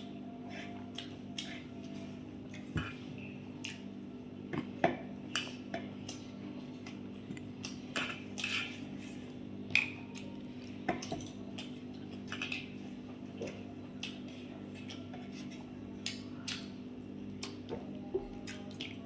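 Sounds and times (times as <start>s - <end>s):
steady low hum: 0.0s - 19.0s
wet chewing: 0.9s - 3.9s, 9.7s - 19.0s.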